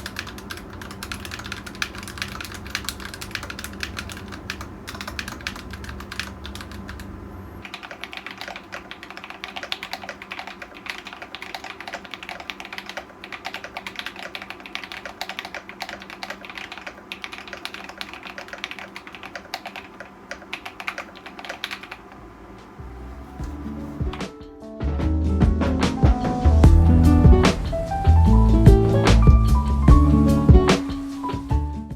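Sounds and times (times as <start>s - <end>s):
fast typing on mechanical keyboard: 0.0s - 22.2s.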